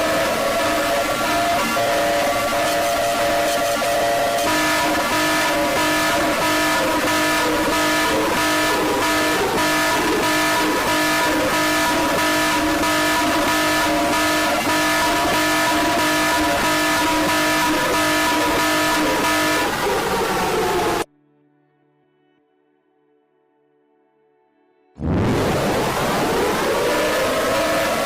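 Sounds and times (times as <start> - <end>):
emergency alert alarm buzzing tones: 0.0 - 21.1.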